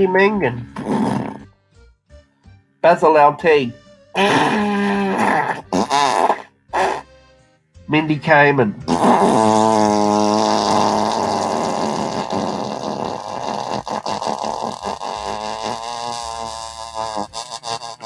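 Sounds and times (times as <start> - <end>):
fart sound effect: 0.6 - 1.5, 4.2 - 7.1, 8.8 - 18.0.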